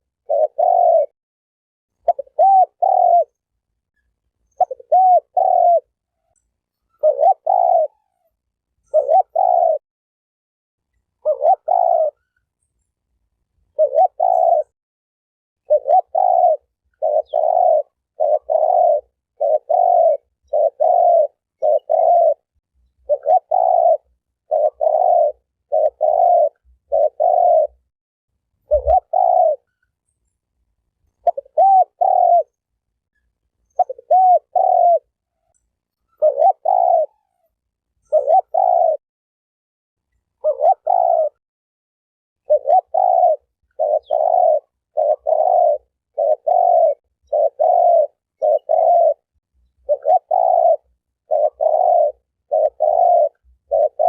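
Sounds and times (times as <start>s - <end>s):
dove cooing: 0.0s - 1.2s, 2.0s - 3.4s, 4.4s - 9.8s, 11.2s - 12.4s, 13.7s - 14.8s, 15.6s - 27.9s, 28.6s - 29.8s, 31.2s - 32.6s, 33.6s - 39.0s, 40.3s - 41.4s, 42.4s - 54.0s.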